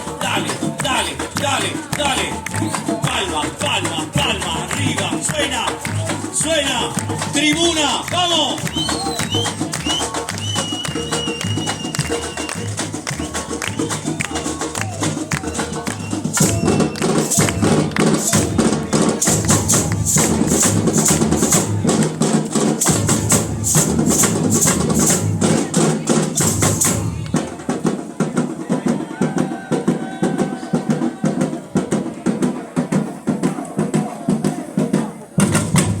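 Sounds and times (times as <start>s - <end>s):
shakers: 0.0s - 27.5s
bass drums: 0.0s - 27.8s, 35.4s - 36.0s
snare drums: 0.0s - 36.0s.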